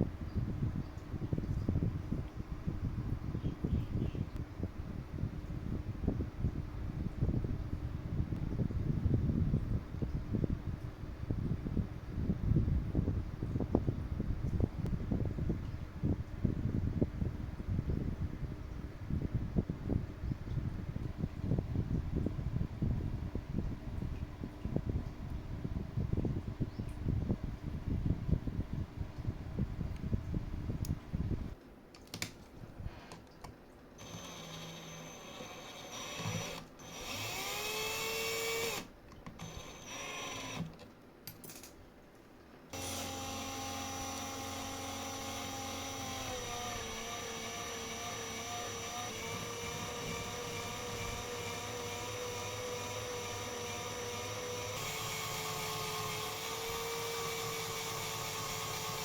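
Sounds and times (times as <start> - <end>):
electric rotary tool whining: 34.0 - 40.7, 42.8 - 59.0.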